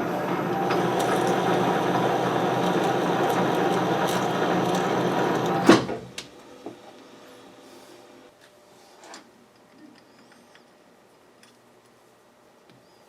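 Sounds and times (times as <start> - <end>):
metal lathe gears whirring: 0.0 - 5.8
lathe stopping clunk: 0.0 - 6.0.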